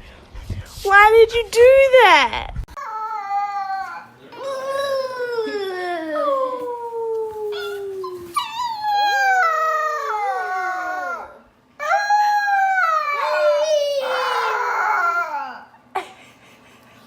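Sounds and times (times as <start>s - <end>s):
dog howling: 2.8s - 15.7s.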